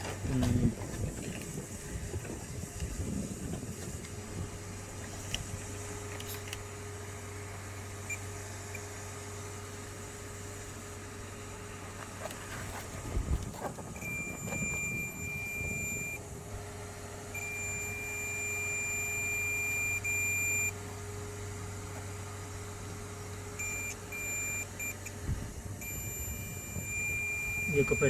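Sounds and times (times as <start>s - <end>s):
steady low hum: 0.0s - 28.0s
multimeter continuity beeps: 14.0s - 16.2s, 17.3s - 20.8s, 23.6s - 25.2s, 25.8s - 28.0s.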